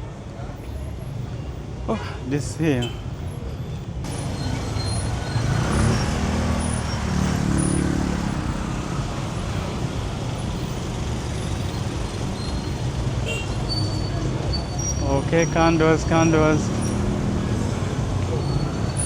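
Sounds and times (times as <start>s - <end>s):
traffic rumble: 0.0s - 19.0s
nearby engine hum: 4.1s - 9.7s.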